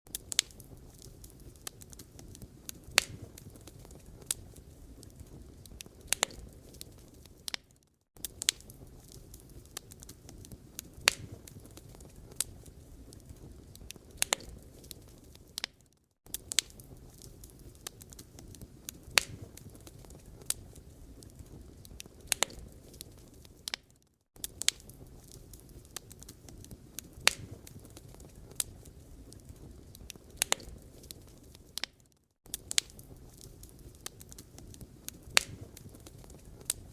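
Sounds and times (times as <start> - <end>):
fire hissing and rumbling: 0.1 - 7.6, 8.2 - 15.7, 16.3 - 23.8, 24.4 - 31.9, 32.5 - 36.9
wood fire crackling and popping: 0.1 - 36.9.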